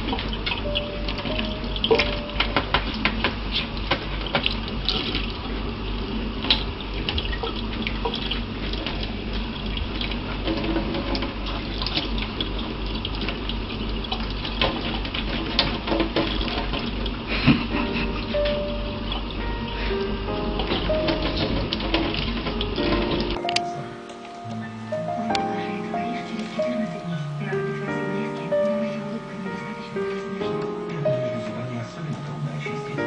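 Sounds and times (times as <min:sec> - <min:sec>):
water running and splashing: 0:00.0 - 0:23.4.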